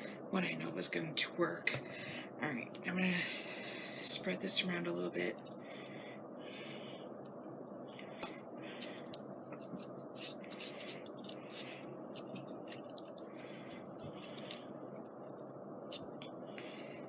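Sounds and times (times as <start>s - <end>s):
glue rubbing strokes on paper: 8.9s - 13.2s.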